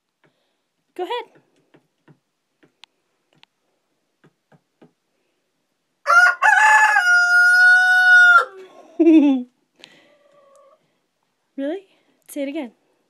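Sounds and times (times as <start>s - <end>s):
rooster crowing: 6.0s - 8.7s.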